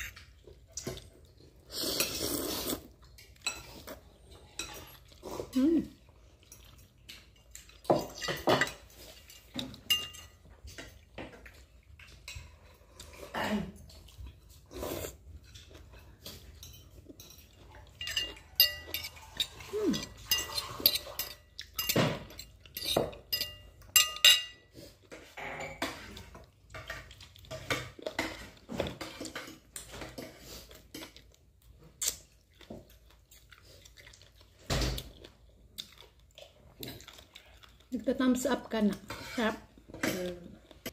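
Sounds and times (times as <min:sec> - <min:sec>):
utensils clinking on plates: 0:06.4 - 0:12.8, 0:15.3 - 0:31.2.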